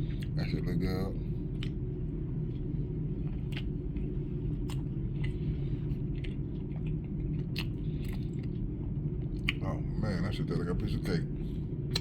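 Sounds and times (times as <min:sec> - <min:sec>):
steady low rumble: 0:00.0 - 0:12.0
person chewing: 0:01.5 - 0:01.9, 0:02.5 - 0:09.7.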